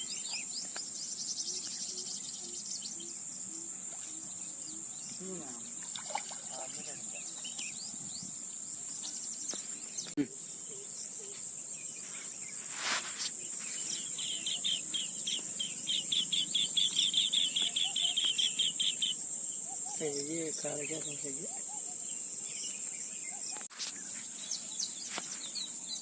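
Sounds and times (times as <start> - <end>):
bird chirps: 0.0 - 26.0
insects droning: 0.0 - 26.0.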